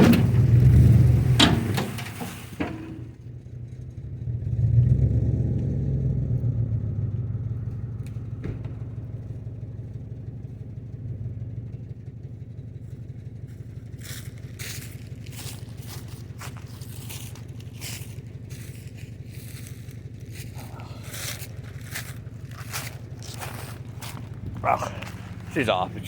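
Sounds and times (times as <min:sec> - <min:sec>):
engine droning and revving: 0:00.0 - 0:26.0.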